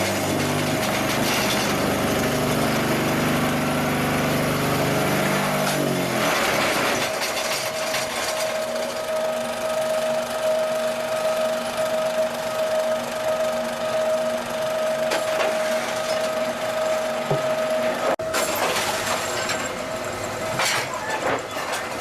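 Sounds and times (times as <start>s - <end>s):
machine humming with high tone: 0.0s - 21.1s
lower machine tone: 8.5s - 18.6s.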